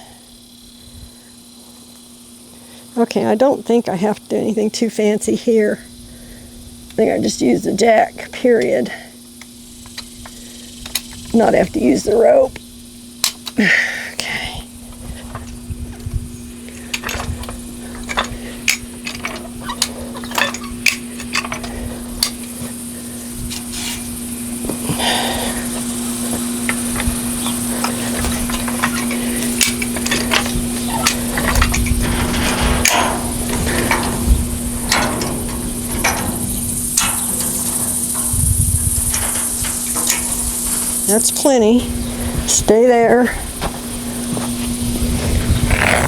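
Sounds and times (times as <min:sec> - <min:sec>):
metal jack clicking and clanking: 0:16.7 - 0:22.6, 0:26.6 - 0:41.8.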